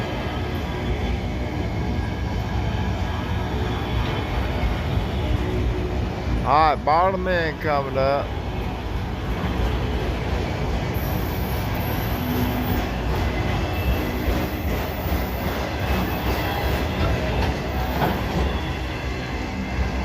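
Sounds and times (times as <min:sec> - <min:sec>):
train wheels rumbling on rail: 0:00.0 - 0:20.0
high-pitched wheel squeal: 0:11.0 - 0:19.6.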